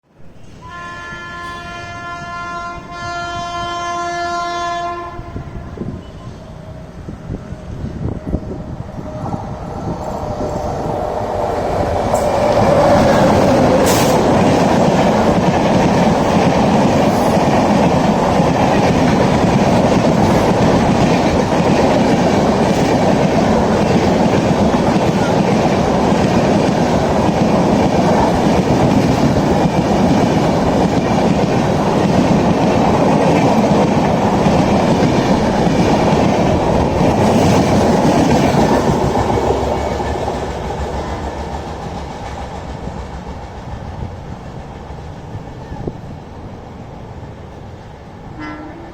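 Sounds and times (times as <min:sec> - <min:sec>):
train passing at speed: 0:00.0 - 0:48.9
train wheel clatter: 0:08.2 - 0:46.2.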